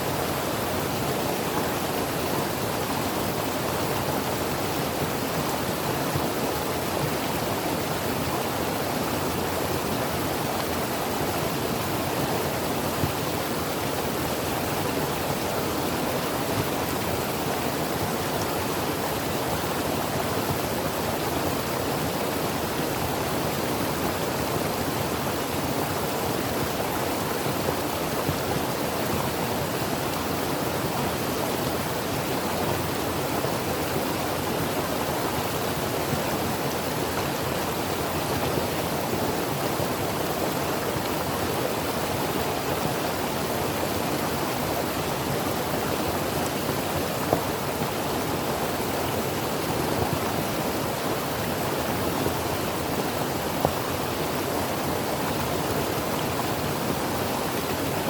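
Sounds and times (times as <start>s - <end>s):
creek water rushing over rocks: 0.0s - 58.0s.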